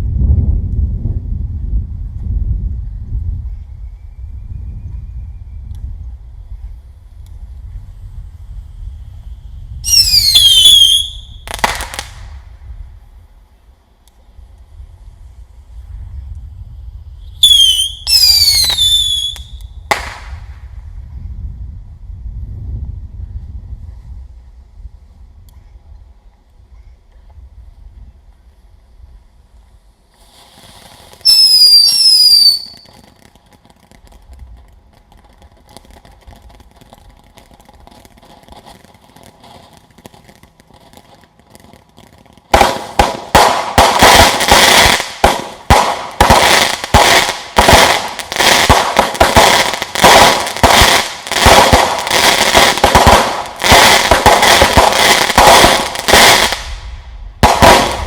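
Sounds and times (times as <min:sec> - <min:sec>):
firecrackers going off: 0:06.5 - 0:13.2, 0:17.2 - 0:20.7, 0:30.0 - 0:58.0
firework whistle: 0:08.8 - 0:12.3, 0:17.2 - 0:20.3, 0:30.2 - 0:33.2, 0:42.5 - 0:58.0.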